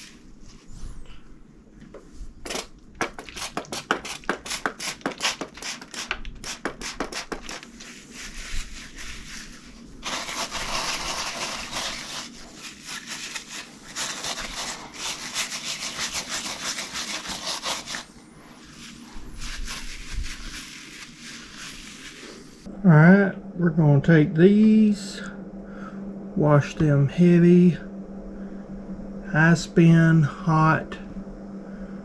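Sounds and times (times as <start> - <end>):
brush scrubbing wet fabric: 3.0 - 22.7.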